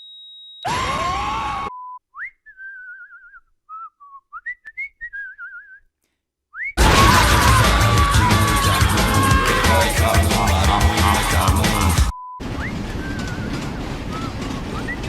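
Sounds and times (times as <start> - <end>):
loud music: 6.8 - 12.1
loud noisy burst: 6.8 - 12.1
person whistling a tune: 14.1 - 15.0.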